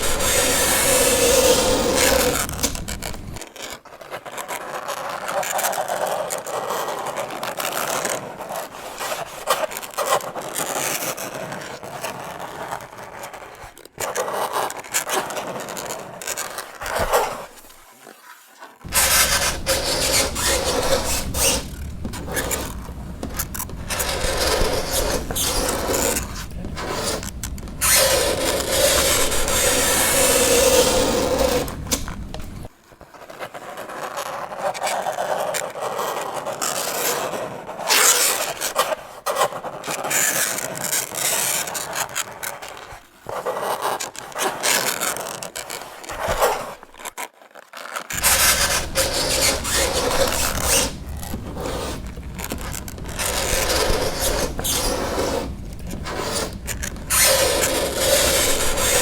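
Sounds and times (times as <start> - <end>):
fingernails scraping chalkboard: 0.0 - 3.4, 18.8 - 32.7, 48.1 - 59.0.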